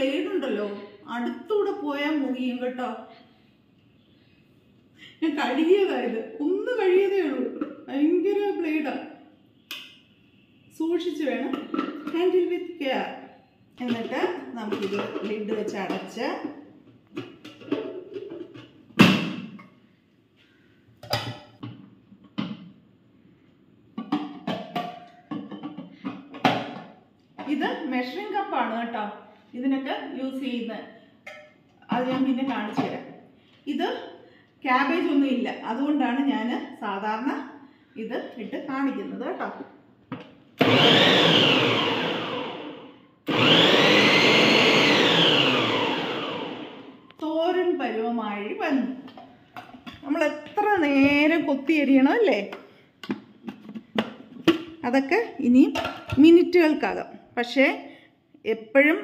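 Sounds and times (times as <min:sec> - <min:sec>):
mixer grinder motor whining: 0:40.6 - 0:47.0.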